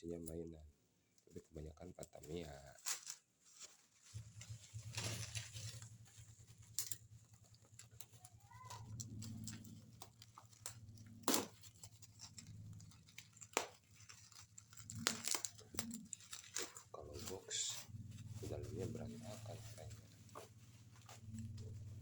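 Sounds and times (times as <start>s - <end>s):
low steady hum: 4.1s - 22.0s
packaging tearing: 7.7s - 17.8s.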